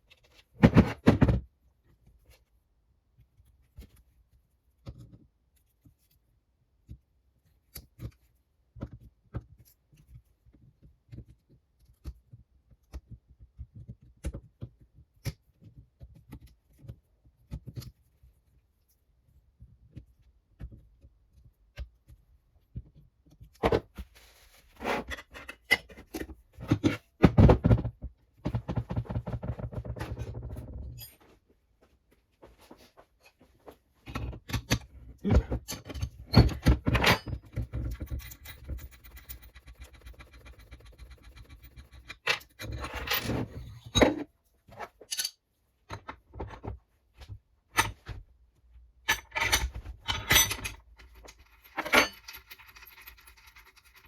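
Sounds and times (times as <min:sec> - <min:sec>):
steady scraping or rubbing: 0:24.0 - 0:25.4, 0:37.6 - 0:43.9
metal parts clinking on workbench: 0:49.1 - 0:54.0.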